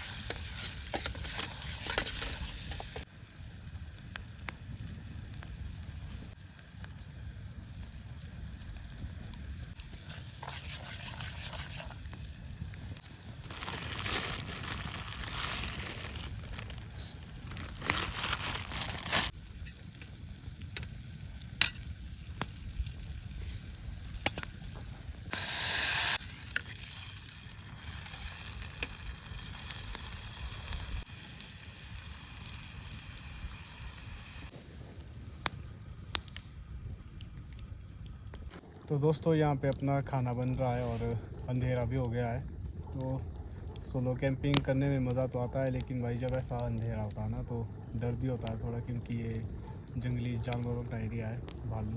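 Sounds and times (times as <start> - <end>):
food sizzling in a pan: 0.0 - 3.1, 9.7 - 12.3, 25.3 - 34.5
campfire popping and crackling: 0.0 - 51.9.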